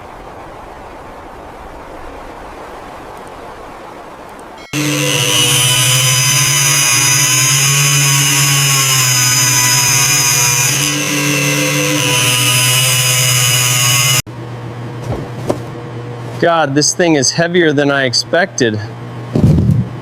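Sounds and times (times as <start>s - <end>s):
motor-driven machine whining: 4.6s - 14.2s.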